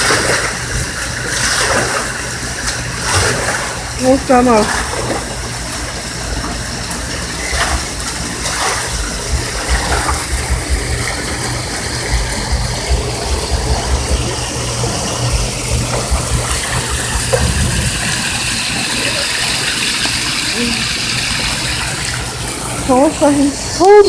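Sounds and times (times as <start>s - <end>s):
floodwater rushing: 0.0s - 24.0s
low rumble: 8.9s - 19.1s.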